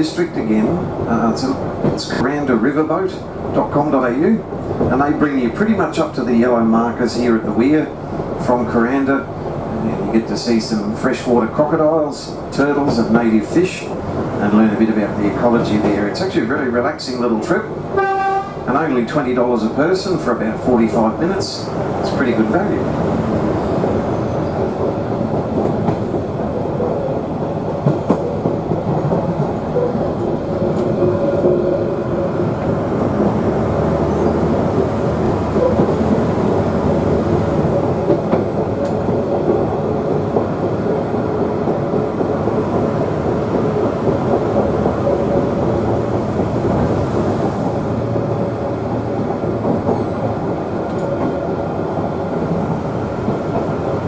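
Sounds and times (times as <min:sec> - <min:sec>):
diesel railcar running: 0:00.0 - 0:54.0
wheels clicking over rail joints: 0:11.4 - 0:54.0.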